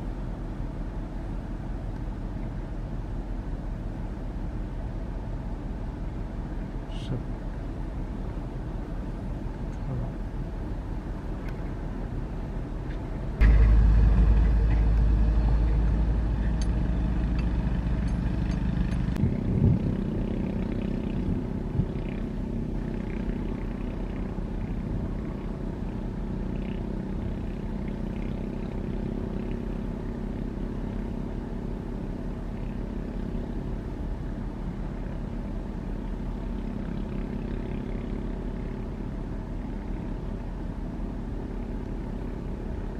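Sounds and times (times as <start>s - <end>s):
diesel engine drone: 0.0s - 42.9s
deep rumble: 13.0s - 28.1s.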